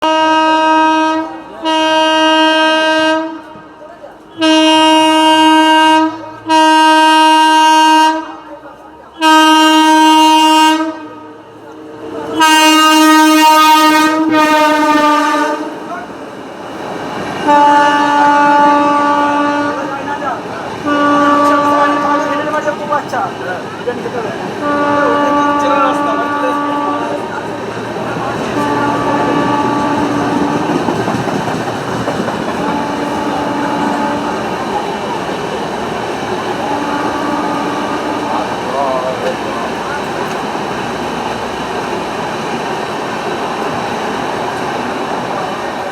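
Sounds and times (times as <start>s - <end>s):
locomotive horn blasts: 0.0s - 3.7s, 4.3s - 8.5s, 9.1s - 11.6s, 12.2s - 15.9s, 17.4s - 20.0s, 20.8s - 22.8s, 24.6s - 27.6s, 28.4s - 30.9s, 32.6s - 34.8s, 36.5s - 38.9s
train running through: 0.0s - 45.9s.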